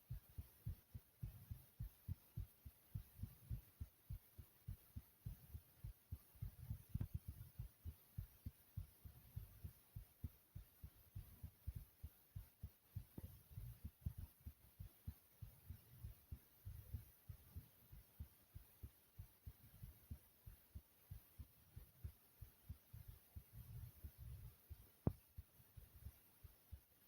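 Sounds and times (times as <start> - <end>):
heartbeat thumps: 0.0 - 27.0.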